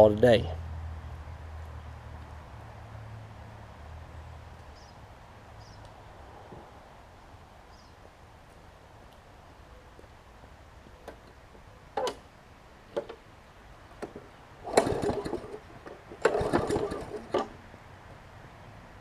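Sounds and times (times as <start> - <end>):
mower engine turning over: 14.0 - 17.6
recoil starter cord pulls: 14.0 - 17.6.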